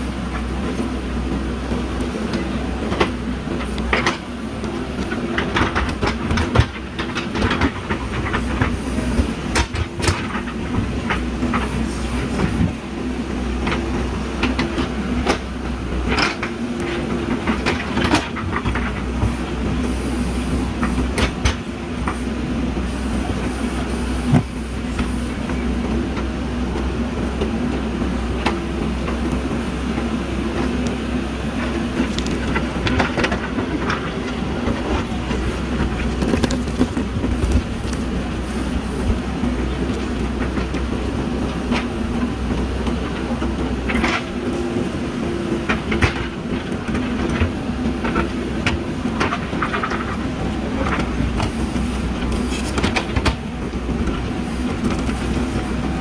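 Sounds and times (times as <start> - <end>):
diesel engine running: 0.0 - 56.0
knocks and clanks: 31.6 - 44.4.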